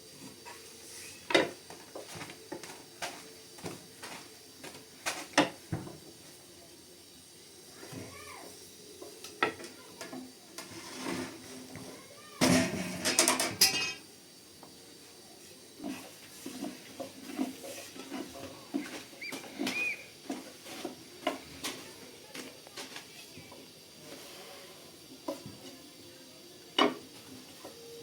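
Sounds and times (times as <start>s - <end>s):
pots and utensils clattering: 0.2s - 6.1s, 9.0s - 14.1s, 15.8s - 23.1s, 24.0s - 25.8s, 26.8s - 28.0s.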